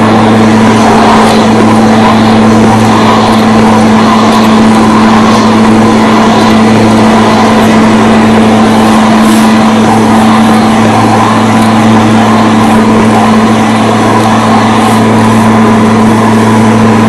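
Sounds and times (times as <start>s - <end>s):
lawn mower engine droning: 0.0s - 17.0s.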